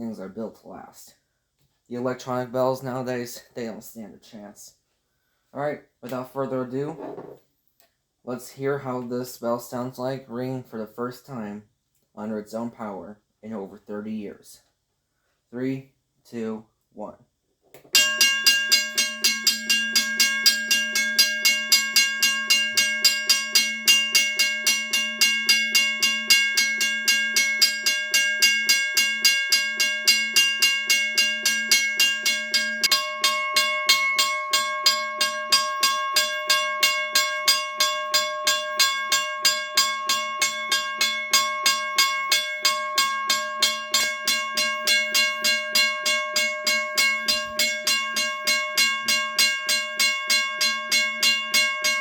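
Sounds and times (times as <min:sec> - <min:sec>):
crossing bell ringing: 0:18.0 - 0:52.0.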